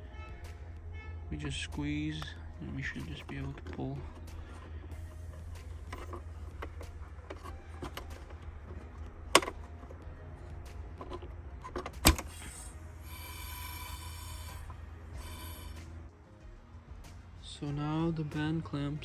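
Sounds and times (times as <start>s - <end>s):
plastic clicks: 3.0s - 12.7s
plastic snapping: 3.0s - 12.7s.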